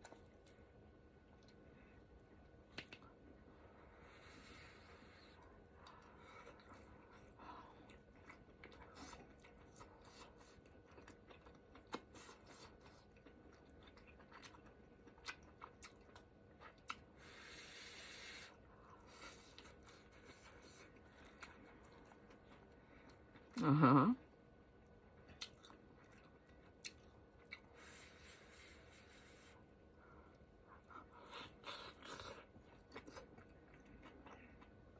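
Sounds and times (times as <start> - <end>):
close-up chewing: 0.0 - 23.6, 24.8 - 34.9
breathy hiss: 17.2 - 18.6.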